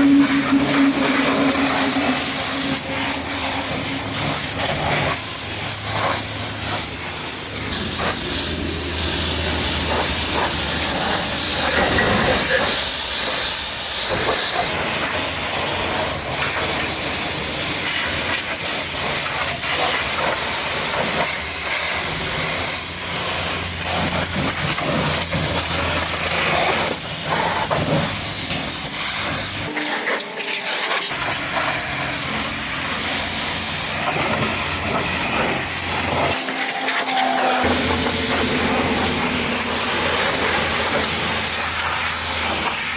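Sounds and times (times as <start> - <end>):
low hum: 0.0 - 5.1
pressure washer spray hissing: 0.0 - 42.9.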